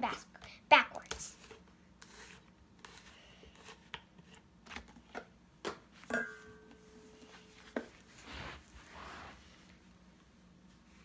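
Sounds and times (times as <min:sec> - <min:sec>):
faint steady tone: 0:06.1 - 0:07.7.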